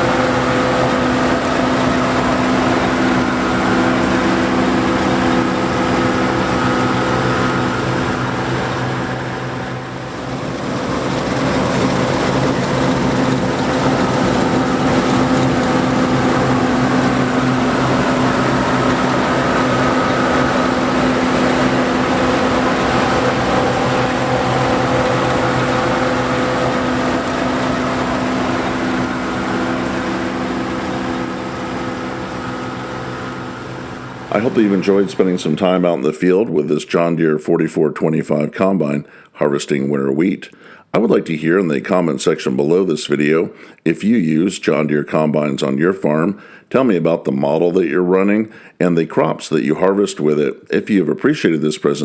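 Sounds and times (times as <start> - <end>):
combine harvester running: 0.0 - 37.1.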